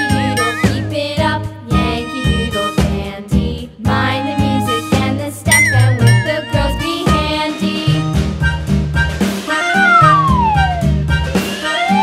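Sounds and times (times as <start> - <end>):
upbeat children's music: 0.0 - 12.0.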